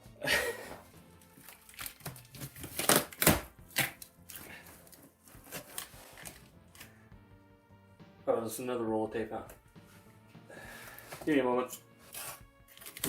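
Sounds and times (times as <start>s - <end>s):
packing crinkling: 1.3s - 6.9s
cardboard box being torn open: 1.6s - 4.0s.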